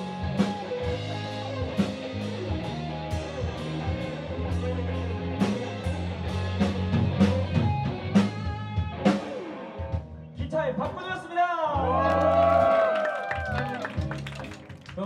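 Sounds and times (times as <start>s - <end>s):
electric guitar lead: 0.0s - 10.4s, 11.8s - 14.8s
live rock band playing: 0.0s - 10.8s, 11.8s - 15.0s.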